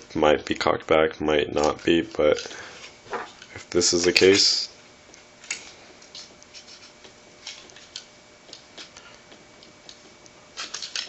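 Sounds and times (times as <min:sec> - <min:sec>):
small metal parts clicking: 0:10.6 - 0:11.0.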